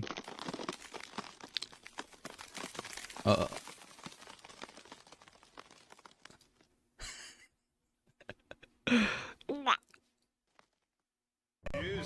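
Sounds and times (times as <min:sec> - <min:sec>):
person breathy sighing: 0:08.9 - 0:09.4
person exhaling: 0:08.9 - 0:09.4.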